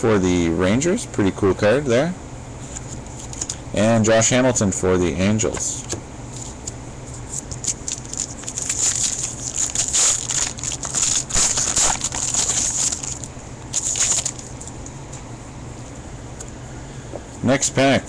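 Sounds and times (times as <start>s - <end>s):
wrapper crinkling and tearing: 7.3s - 14.8s.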